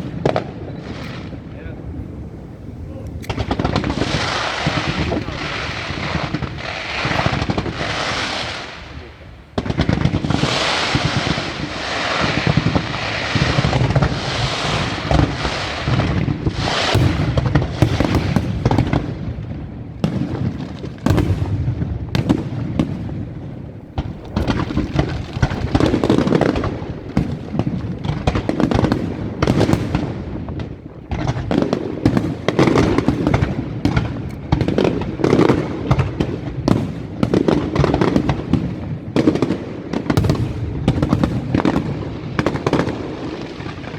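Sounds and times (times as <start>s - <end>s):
fireworks bursting and crackling: 0.0s - 43.9s.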